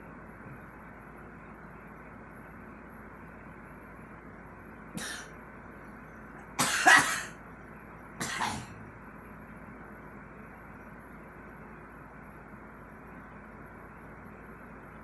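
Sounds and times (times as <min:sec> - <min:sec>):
girl coughing: 0:05.0 - 0:05.3, 0:06.6 - 0:07.4, 0:08.2 - 0:08.8.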